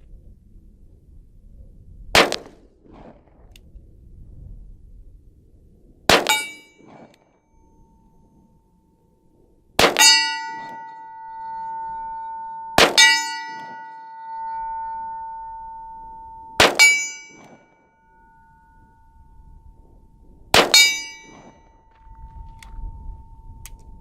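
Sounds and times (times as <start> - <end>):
steel target clanging: 6.1 - 7.1, 9.8 - 19.2, 20.5 - 21.9.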